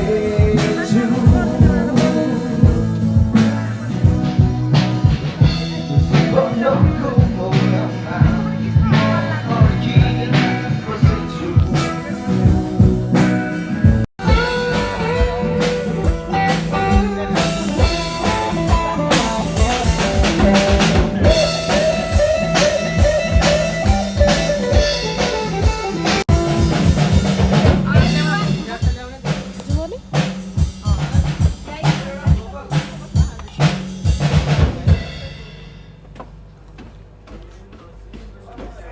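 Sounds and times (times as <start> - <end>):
guitar melody: 0.0 - 30.0
drum kit beat: 0.0 - 37.2.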